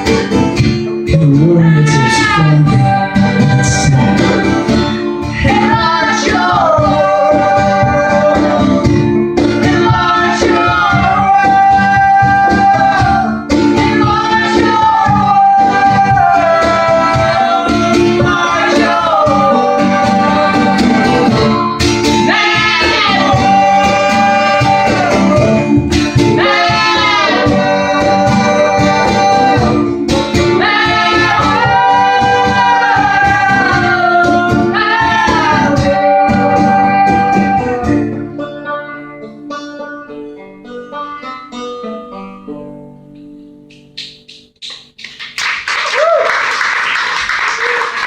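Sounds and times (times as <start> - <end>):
strummed banjo and guitar: 0.0 - 43.6
voices singing in harmony: 1.2 - 38.7.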